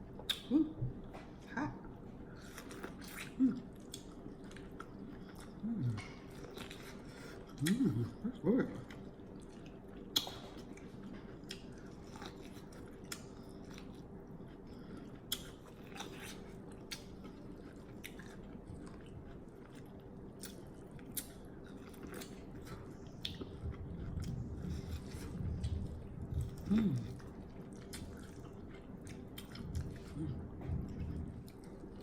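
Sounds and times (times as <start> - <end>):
person chewing and smacking: 2.4 - 32.0
wet mouth clicks: 10.1 - 10.5.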